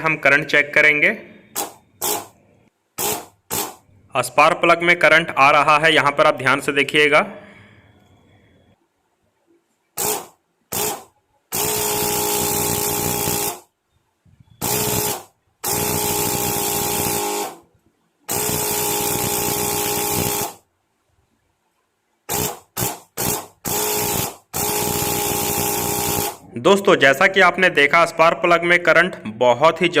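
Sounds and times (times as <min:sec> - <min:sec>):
electric starter buzzing: 0:01.5 - 0:02.4, 0:03.0 - 0:03.9, 0:10.0 - 0:13.7, 0:14.6 - 0:17.7, 0:18.3 - 0:20.7, 0:22.3 - 0:26.4.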